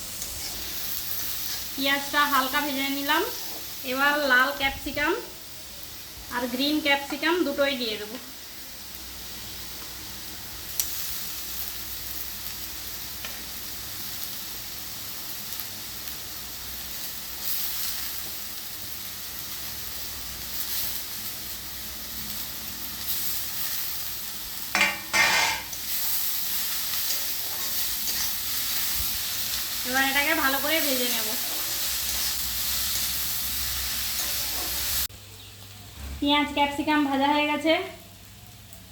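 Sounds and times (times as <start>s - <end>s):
vegetables sizzling in oil: 0.0s - 38.9s
spatula scraping pan: 24.8s - 26.0s, 26.9s - 29.6s, 30.8s - 33.2s, 34.0s - 35.1s.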